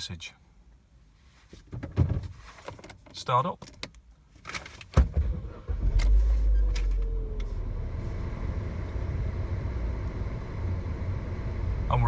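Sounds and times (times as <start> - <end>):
car engine starting and idling: 5.0 - 12.0.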